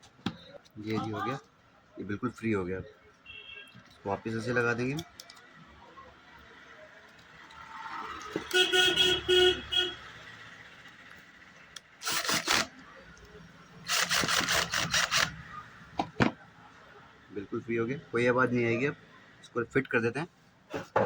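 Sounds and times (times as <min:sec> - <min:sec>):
vehicle horn short toots: 0:03.3 - 0:03.8, 0:08.5 - 0:10.0.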